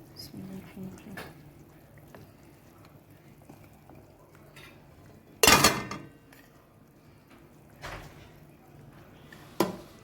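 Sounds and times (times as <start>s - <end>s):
metal cookware clanking: 5.4s - 6.4s.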